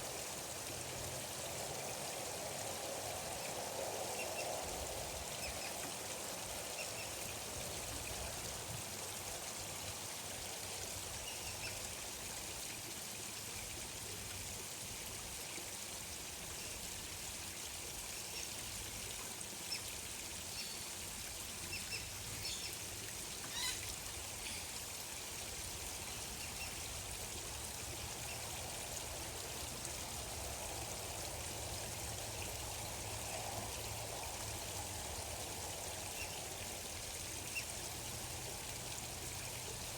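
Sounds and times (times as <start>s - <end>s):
trickle of running water: 0.0s - 39.9s
short bird calls: 23.5s - 23.8s.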